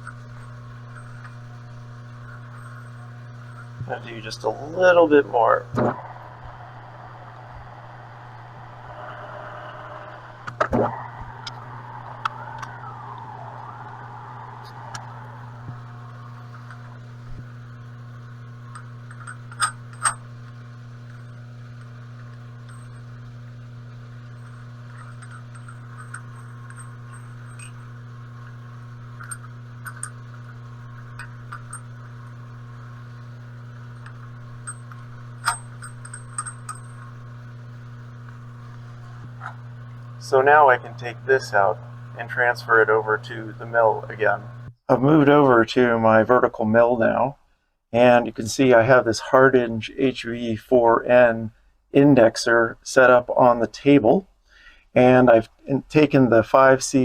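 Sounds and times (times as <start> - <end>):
lathe motor hum: 0.0 - 44.7.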